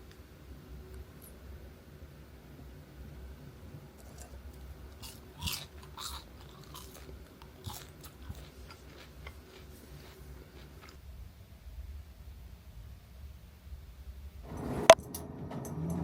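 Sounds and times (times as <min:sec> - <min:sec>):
faint low room hum: 0:00.0 - 0:16.0
person chewing crunchy food: 0:03.9 - 0:11.0.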